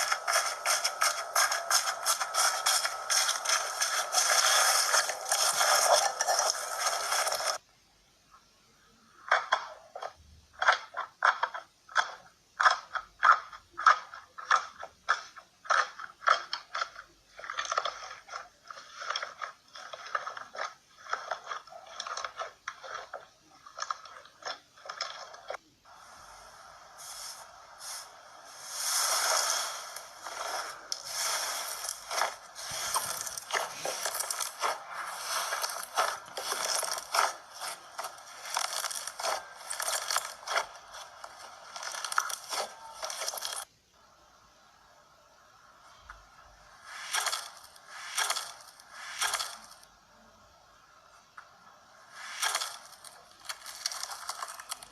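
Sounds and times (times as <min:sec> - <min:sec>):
slime squishing by hand: 0:00.0 - 0:07.6, 0:09.2 - 0:44.1, 0:45.6 - 0:54.9.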